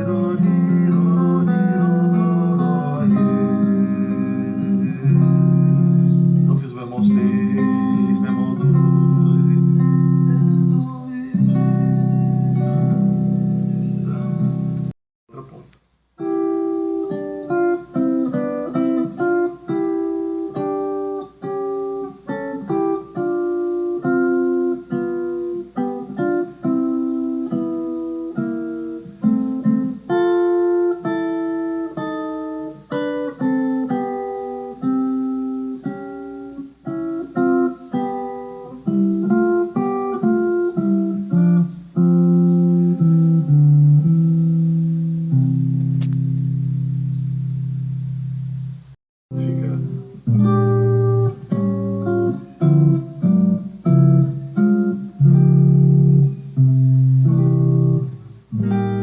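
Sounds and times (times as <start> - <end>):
guitar chords ringing: 0.0 - 15.6, 16.2 - 59.0.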